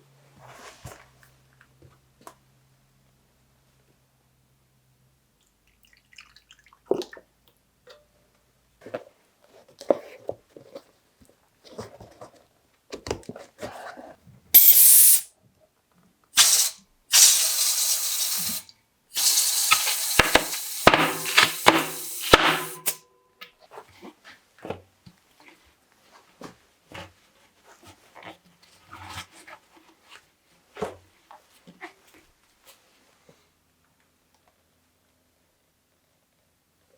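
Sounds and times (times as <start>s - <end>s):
hissing spray bursts: 14.6s - 15.3s, 16.4s - 18.6s, 19.2s - 23.0s
parts clicking and knocking: 19.2s - 23.0s.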